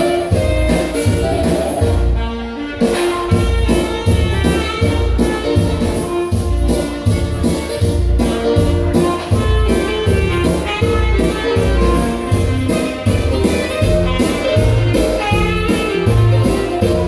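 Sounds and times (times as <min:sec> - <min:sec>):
dance music with strong bass: 0:00.0 - 0:08.1.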